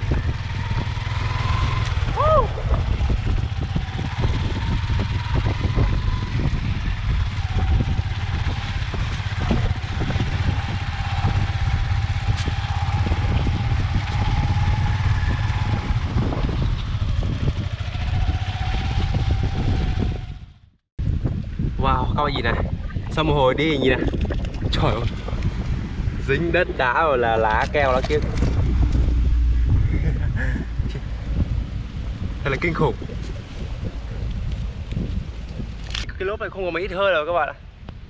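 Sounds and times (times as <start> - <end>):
motorbike engine running: 0.0 - 20.6, 27.4 - 36.0
wind rumble on microphone: 0.0 - 38.0.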